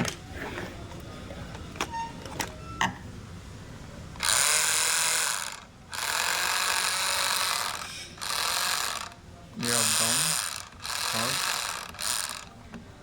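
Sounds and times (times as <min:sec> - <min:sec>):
toy truck motor whirring: 0:04.2 - 0:12.6.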